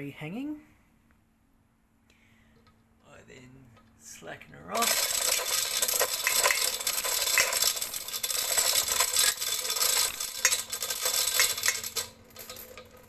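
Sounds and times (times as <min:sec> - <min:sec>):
steel chain rattling through block: 0:04.8 - 0:13.0.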